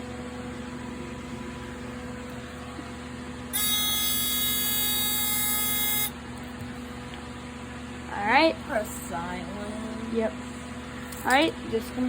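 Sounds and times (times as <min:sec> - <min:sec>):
electrical hum: 0:00.0 - 0:12.0
high-pitched alarm buzzer: 0:03.5 - 0:06.2.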